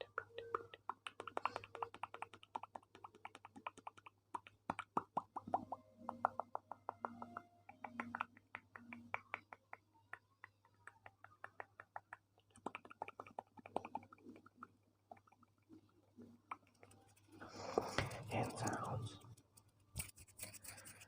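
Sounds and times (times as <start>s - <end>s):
soft clicks and taps: 0.0s - 15.4s.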